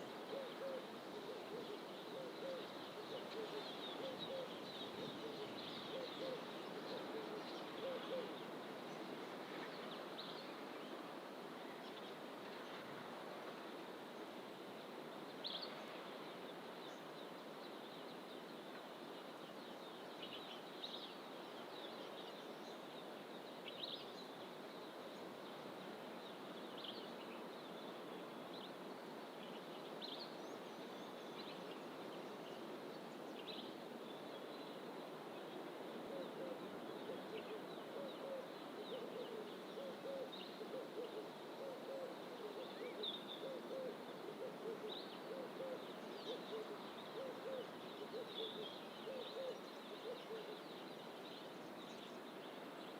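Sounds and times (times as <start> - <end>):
low cooing call: 0.0 - 8.4, 36.0 - 50.8
steady rushing hiss: 0.0 - 52.9.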